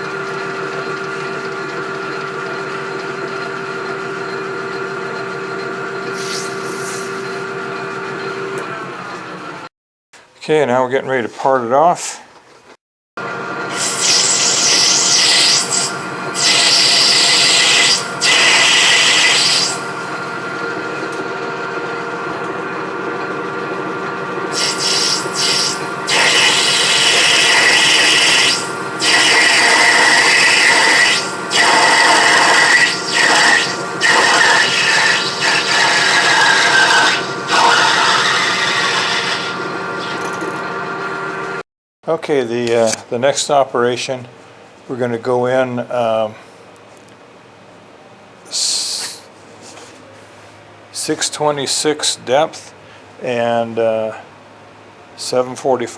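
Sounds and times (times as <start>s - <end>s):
metal lathe running: 0.0s - 9.7s, 13.2s - 41.6s
cutting tool rasping hiss: 6.0s - 7.4s, 13.7s - 20.0s, 24.5s - 40.2s, 48.5s - 49.8s.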